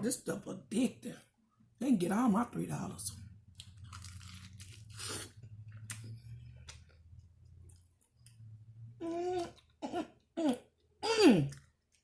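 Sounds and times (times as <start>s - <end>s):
low steady hum: 0.3s - 12.0s
chewing with wet mouth clicks: 5.7s - 8.4s, 11.5s - 12.0s.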